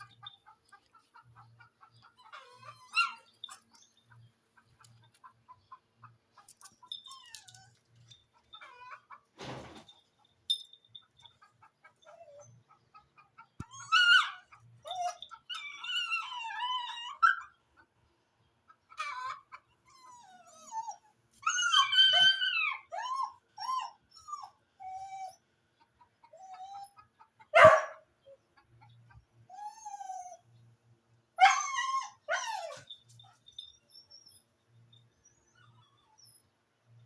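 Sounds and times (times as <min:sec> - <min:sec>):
dogs squealing and whining: 0:00.0 - 0:04.0, 0:06.8 - 0:09.2, 0:11.9 - 0:12.7, 0:13.6 - 0:17.6, 0:18.9 - 0:25.5, 0:26.2 - 0:27.9, 0:29.4 - 0:30.7, 0:31.4 - 0:37.0
dog's sharp cry: 0:27.6 - 0:28.0.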